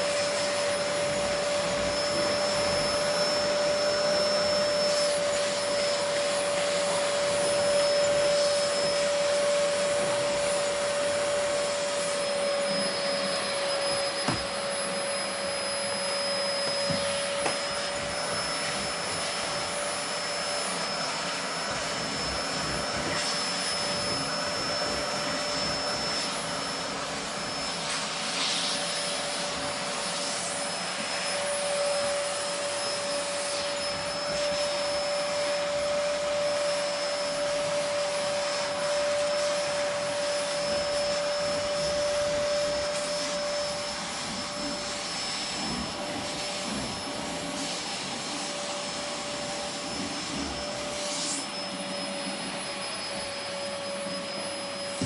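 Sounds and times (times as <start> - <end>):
vacuum cleaner running: 0.0 - 55.0.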